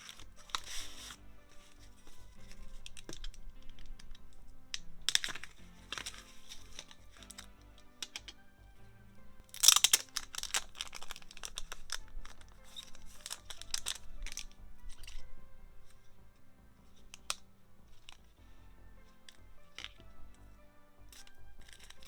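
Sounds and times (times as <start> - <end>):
packaging tearing: 0.0 - 4.2, 9.5 - 15.3, 21.2 - 22.0
paper and plastic crinkling: 0.0 - 8.4, 9.5 - 16.1, 16.8 - 18.4, 19.0 - 20.5, 21.1 - 22.0
soft background music: 0.0 - 22.0.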